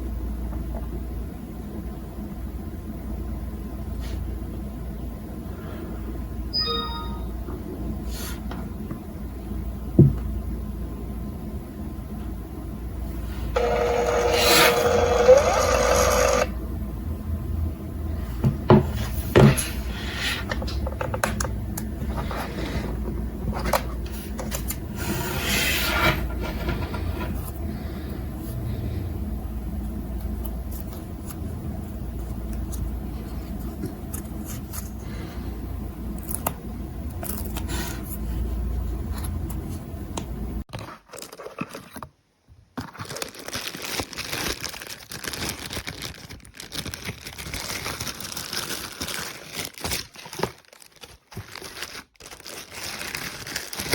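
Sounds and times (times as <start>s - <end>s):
objects rubbing and scraping: 24.9s - 27.7s
constant low rumble: 26.1s - 40.6s.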